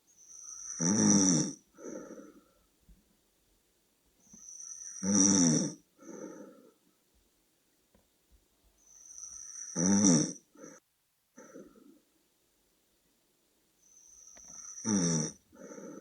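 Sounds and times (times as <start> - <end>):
person snoring with whistle: 0.2 - 2.3, 4.4 - 5.8, 8.9 - 10.8, 13.9 - 16.0
soft breath: 1.8 - 2.8, 6.0 - 7.0, 15.5 - 16.0.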